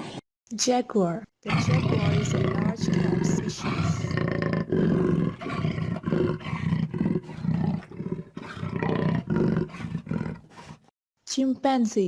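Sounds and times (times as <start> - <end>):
jaguar grunting roar: 1.5 - 10.9.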